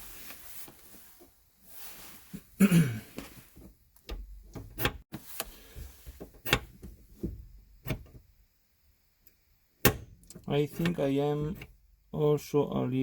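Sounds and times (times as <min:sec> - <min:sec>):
gear shifter clicking and clunking: 0:04.0 - 0:05.5, 0:06.1 - 0:08.3, 0:09.8 - 0:11.8.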